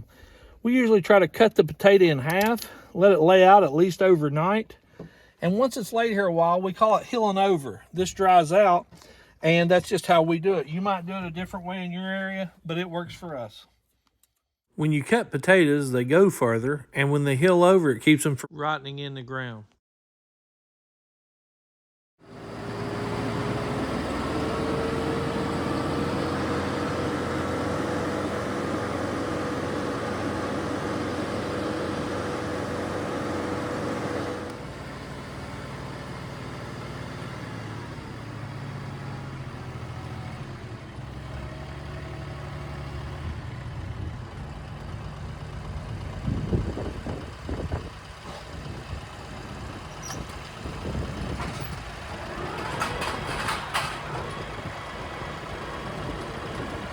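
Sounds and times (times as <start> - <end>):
vehicle engine whining: 22.3 - 56.9.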